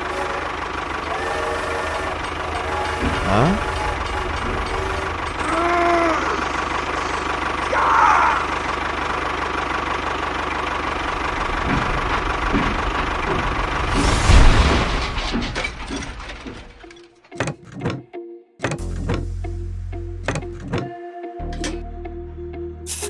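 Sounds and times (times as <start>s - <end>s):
small engine running: 0.0s - 14.3s
sharp knocks: 11.0s - 16.8s.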